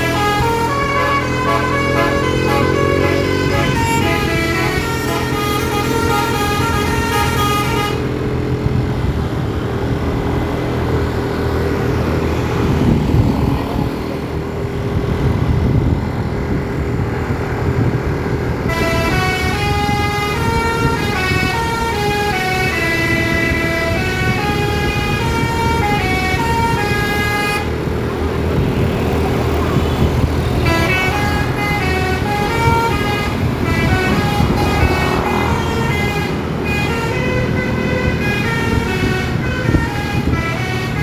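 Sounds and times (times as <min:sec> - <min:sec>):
bus musical horn tune: 0:00.0 - 0:08.2, 0:18.6 - 0:27.8, 0:30.6 - 0:41.0
bus engine droning: 0:00.0 - 0:41.0.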